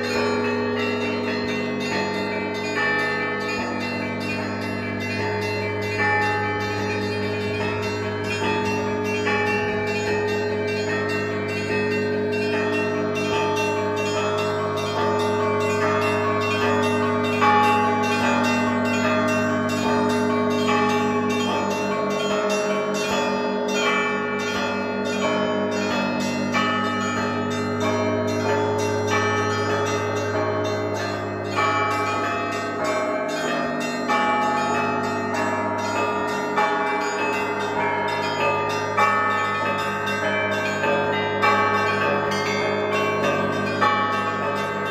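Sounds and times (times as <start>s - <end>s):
hum of large bells: 0.0s - 44.9s
small bells struck rapidly: 0.0s - 44.9s.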